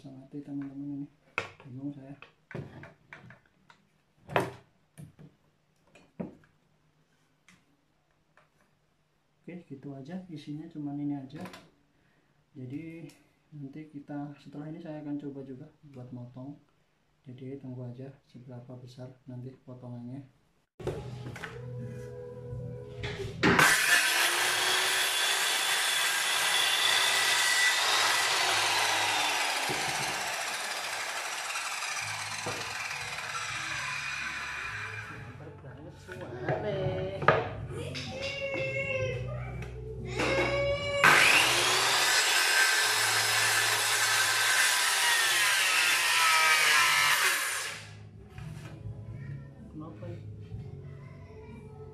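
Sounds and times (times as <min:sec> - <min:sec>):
circular saw cutting wood: 0:23.4 - 0:35.4, 0:41.0 - 0:48.0.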